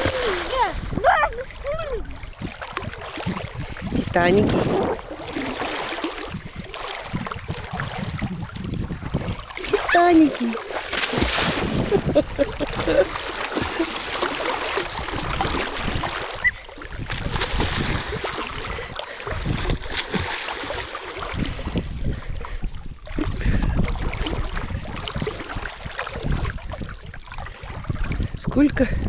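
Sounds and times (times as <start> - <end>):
river water rushing and splashing: 0.0 - 22.4
wind buffeting microphone: 0.0 - 29.0.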